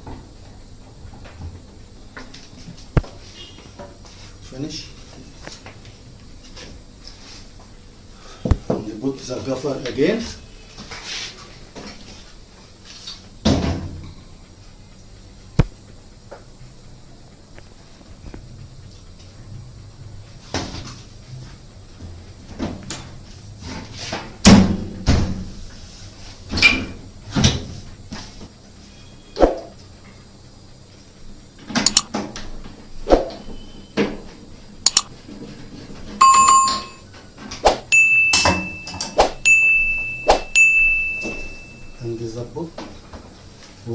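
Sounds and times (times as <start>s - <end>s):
knocks and clicks of parts: 31.7s - 32.3s, 34.8s - 35.1s
loud cover click: 31.8s - 32.1s
high steady beep: 34.9s - 35.1s, 36.2s - 37.0s, 37.9s - 42.3s
short electronic chime: 36.2s - 37.0s, 38.0s - 42.2s.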